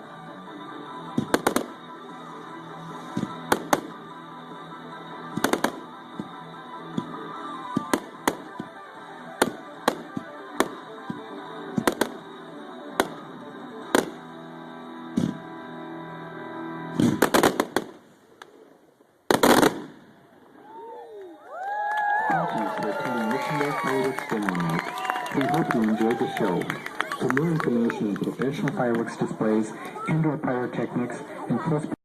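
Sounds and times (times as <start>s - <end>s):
background music: 0.0s - 18.6s, 21.4s - 32.0s
fireworks bursting bangs: 1.1s - 1.9s, 2.9s - 4.1s, 5.2s - 14.4s, 15.1s - 15.5s, 16.9s - 20.4s.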